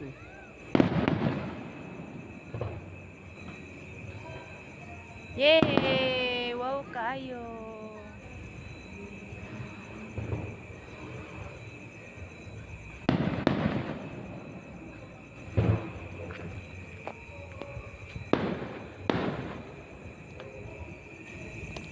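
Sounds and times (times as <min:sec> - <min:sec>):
fireworks bangs: 0:00.5 - 0:04.6, 0:05.3 - 0:06.9, 0:09.9 - 0:17.3, 0:18.0 - 0:21.9.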